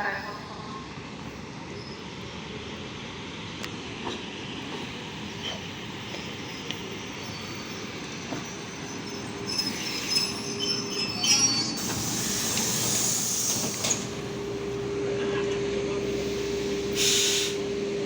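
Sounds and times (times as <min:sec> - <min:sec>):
train rumbling on track: 0:00.0 - 0:18.0
train wheels squealing: 0:01.7 - 0:02.2, 0:04.8 - 0:14.2
loud hiss: 0:11.8 - 0:14.2, 0:16.0 - 0:17.7.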